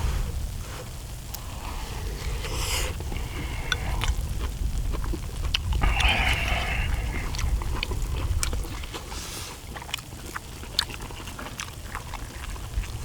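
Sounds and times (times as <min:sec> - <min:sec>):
steady low rumble: 0:00.0 - 0:09.9
chewing: 0:00.6 - 0:13.0.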